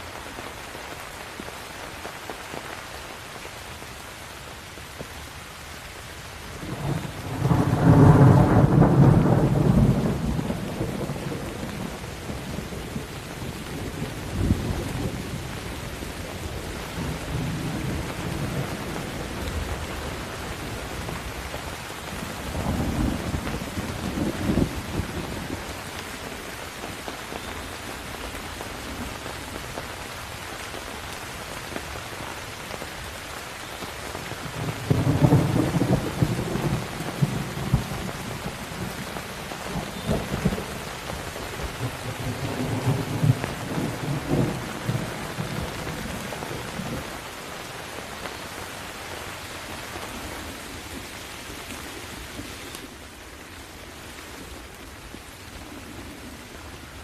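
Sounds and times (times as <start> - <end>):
steady rain: 0.0 - 57.0
thunder rumbling: 6.6 - 26.4, 34.4 - 47.3.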